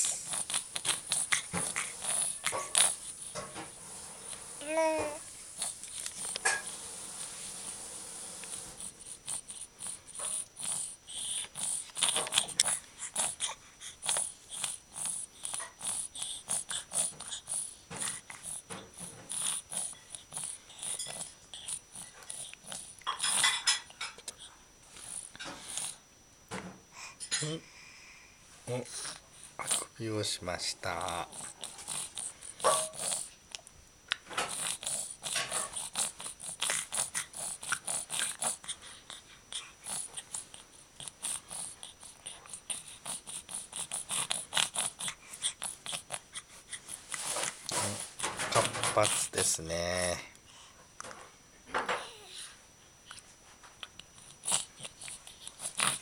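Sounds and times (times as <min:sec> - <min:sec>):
baby snuffling through stuffy nose: 0:00.0 - 0:07.8, 0:31.3 - 0:33.3, 0:34.5 - 0:38.8.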